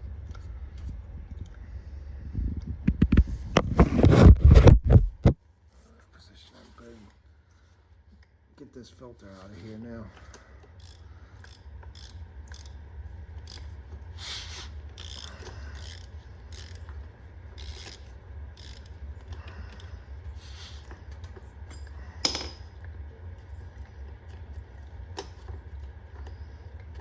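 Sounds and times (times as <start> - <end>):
socket ratchet clicking: 10.8 - 12.8, 15.0 - 16.9, 17.6 - 19.0.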